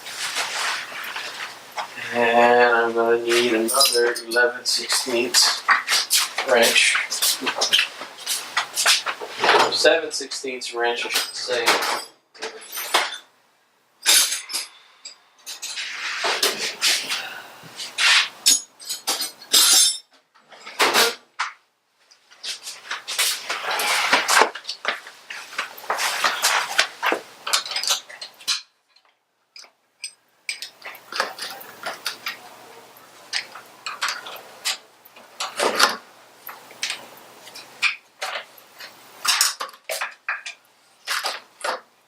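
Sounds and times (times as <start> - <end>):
metal hand tools clinking: 3.3 - 5.8, 18.4 - 20.1.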